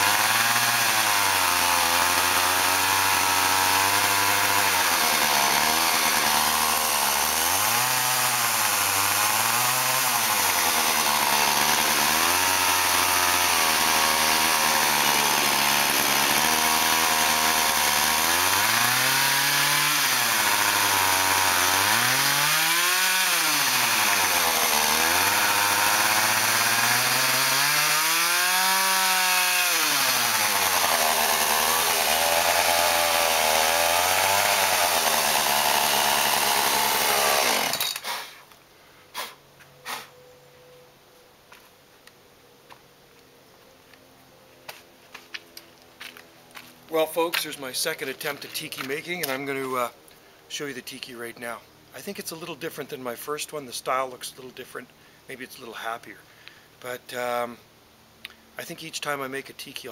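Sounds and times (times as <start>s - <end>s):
chainsaw cutting wood: 0.0s - 38.6s, 46.0s - 49.9s.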